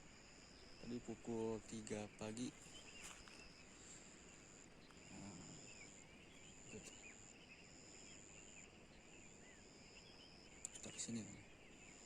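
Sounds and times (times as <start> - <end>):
faint bird chirps: 0.0 - 12.0
insects trilling: 0.0 - 12.0.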